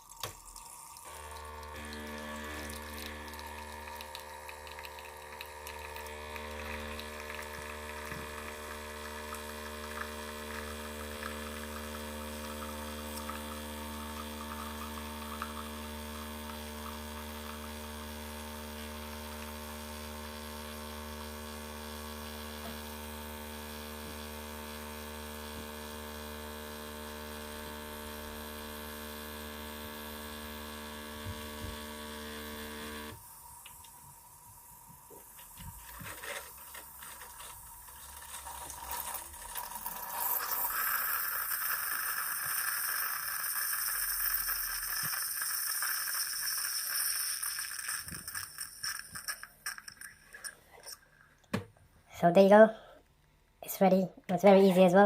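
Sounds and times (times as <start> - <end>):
liquid crackling and trickling: 0.0 - 10.4, 35.2 - 51.4
coffee machine pump humming: 0.0 - 51.6.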